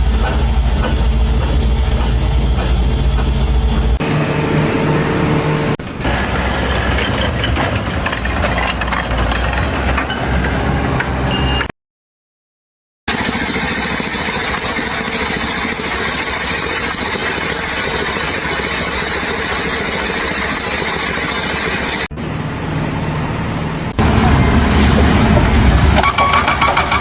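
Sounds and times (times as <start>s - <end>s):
machinery engine humming: 0.1s - 7.0s, 22.1s - 27.0s.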